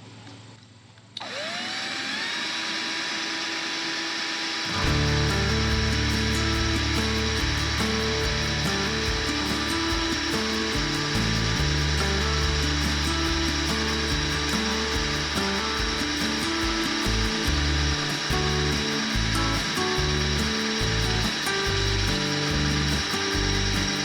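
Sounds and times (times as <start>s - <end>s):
electric drill boring ceramic: 1.2s - 4.6s
background music with steady beat: 4.8s - 24.0s.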